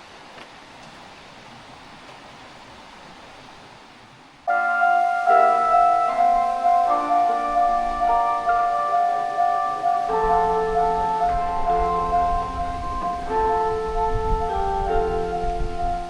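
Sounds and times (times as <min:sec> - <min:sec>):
steady outdoor hiss: 0:00.0 - 0:16.0
piano-like keyboard music: 0:04.5 - 0:16.0.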